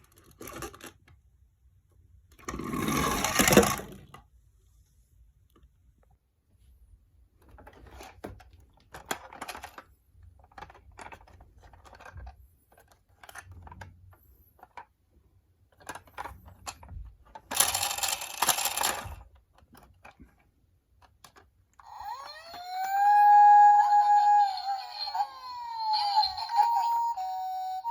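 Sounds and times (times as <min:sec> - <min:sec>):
toy cars clicking and rattling: 0:00.0 - 0:01.1, 0:02.4 - 0:04.2, 0:07.5 - 0:14.0, 0:15.7 - 0:27.1
toy electronic siren: 0:21.8 - 0:27.9.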